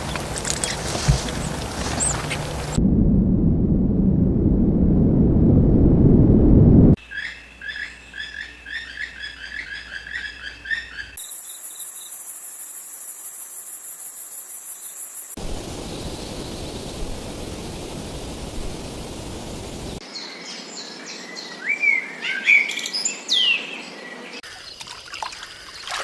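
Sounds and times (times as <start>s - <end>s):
songbird chirping: 0.0s - 2.8s, 7.0s - 17.0s, 19.6s - 26.0s
loud low rumbling noise: 1.5s - 7.0s.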